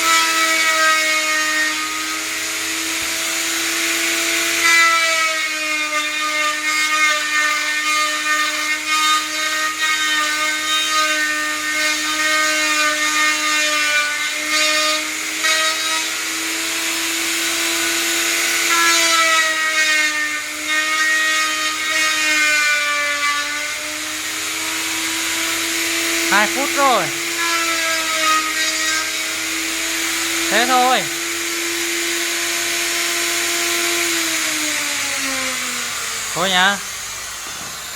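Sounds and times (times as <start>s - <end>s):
power tool motor whine: 0.0s - 6.1s, 14.2s - 37.9s.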